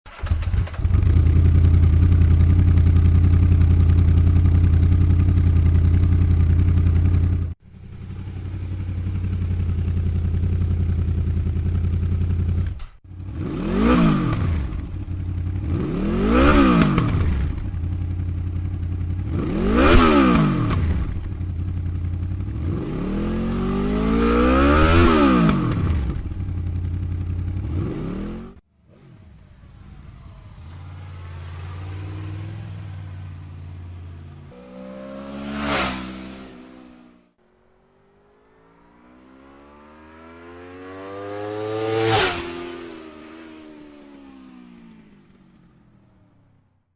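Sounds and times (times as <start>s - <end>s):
motorcycle engine idling: 0.1s - 13.4s, 16.8s - 19.8s, 20.5s - 24.1s, 25.7s - 28.5s
motorcycle engine revving: 0.1s - 46.6s.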